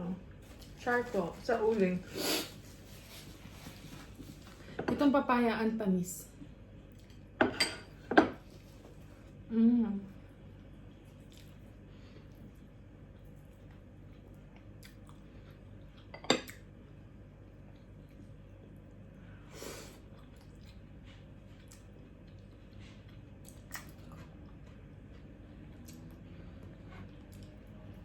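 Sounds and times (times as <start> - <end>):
cutlery clinking on a plate: 7.4 - 8.4
quiet chewing: 10.5 - 16.7, 20.0 - 28.0.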